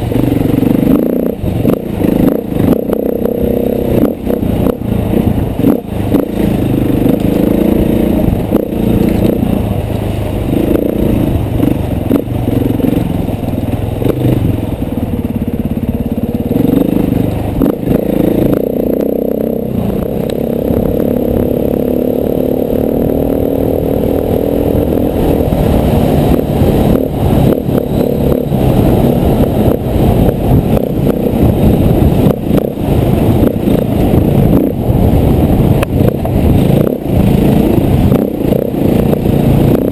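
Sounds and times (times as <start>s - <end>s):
dirt bike engine revving: 0.0s - 9.8s, 10.4s - 39.9s.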